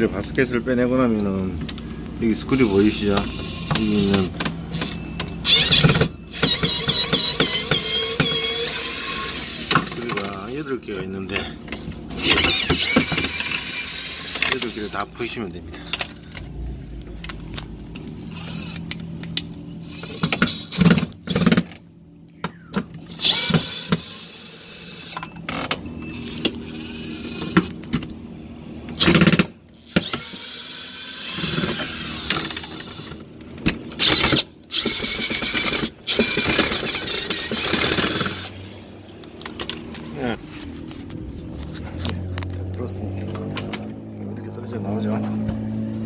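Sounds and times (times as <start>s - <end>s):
power drill whirring: 2.5s - 10.5s, 11.4s - 15.1s, 18.2s - 18.9s, 19.8s - 21.7s, 23.0s - 27.8s, 28.9s - 33.2s, 33.9s - 38.6s.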